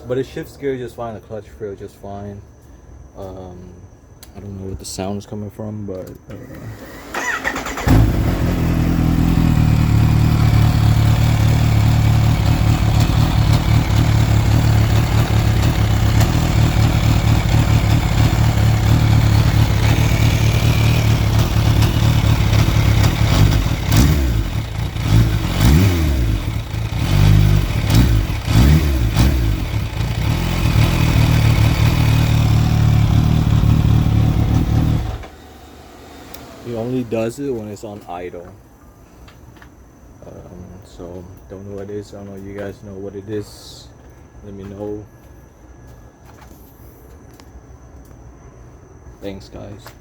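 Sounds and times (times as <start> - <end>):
motorcycle engine idling and revving: 7.0 - 37.3
engine clicking and clanking: 7.2 - 35.4.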